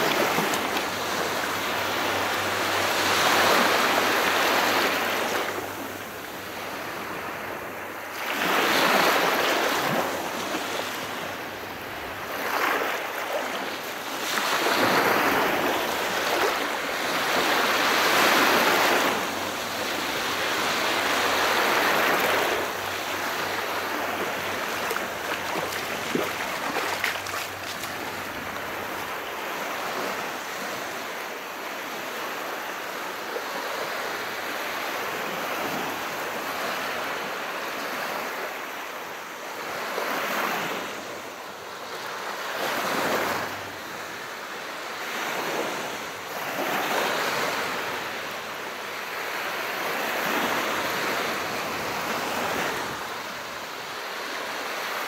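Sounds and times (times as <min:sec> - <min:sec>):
waves washing in: 0:00.0 - 0:38.8, 0:39.6 - 0:55.0.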